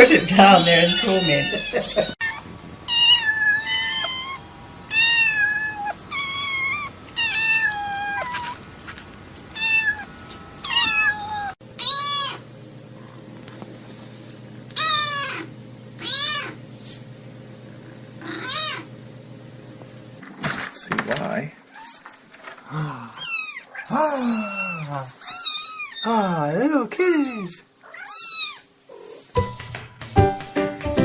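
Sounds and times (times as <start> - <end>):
low steady hum: 0.0 - 21.6
kittens meowing: 0.4 - 8.6, 9.4 - 12.4, 14.8 - 16.6, 18.2 - 18.9, 22.7 - 26.2, 27.0 - 29.3.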